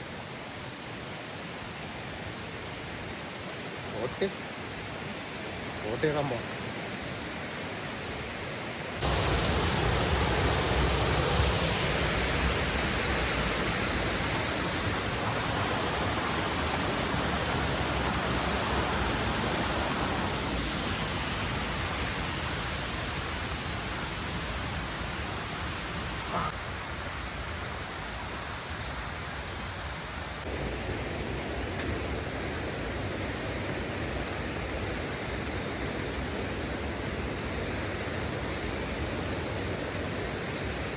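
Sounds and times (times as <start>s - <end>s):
stream rushing over rocks: 0.0s - 28.7s.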